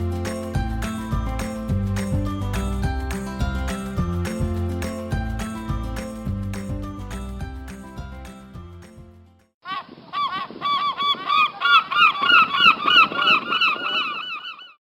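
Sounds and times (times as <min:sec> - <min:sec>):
music: 0:00.0 - 0:09.5
gulls calling: 0:09.7 - 0:14.8.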